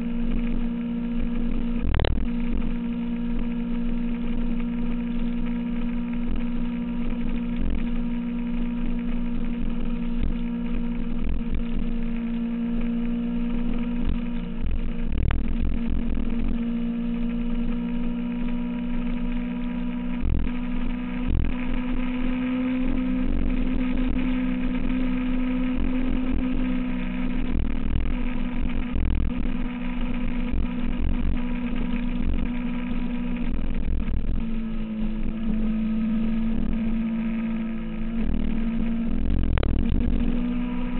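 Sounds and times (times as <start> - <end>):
motorcycle engine cruising: 0.0 - 40.9.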